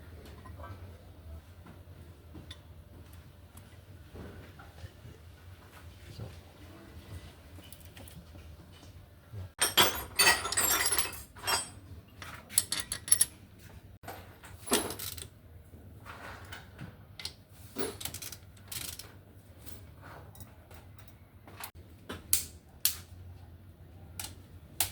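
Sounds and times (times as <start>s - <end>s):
metal tools clinking: 9.6s - 13.4s.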